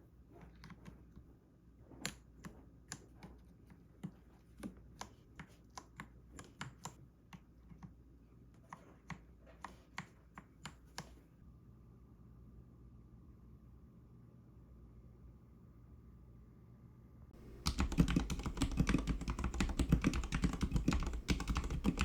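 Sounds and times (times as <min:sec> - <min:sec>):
mechanical keyboard key clacks: 0:17.5 - 0:22.0.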